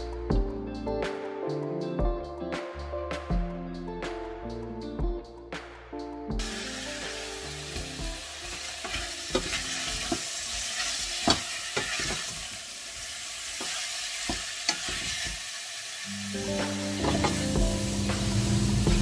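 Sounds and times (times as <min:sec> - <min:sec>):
meat sizzling in a pan: 0:06.4 - 0:19.0.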